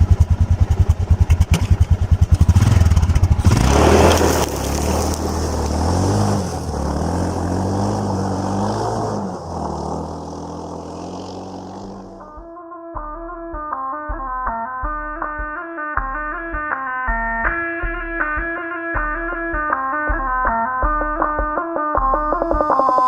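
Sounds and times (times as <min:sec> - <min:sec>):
motorcycle engine revving: 0:00.0 - 0:12.4.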